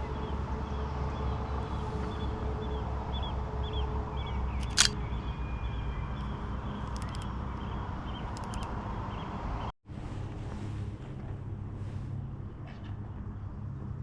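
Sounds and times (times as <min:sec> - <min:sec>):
camera shutter clicks: 0:04.6 - 0:05.0.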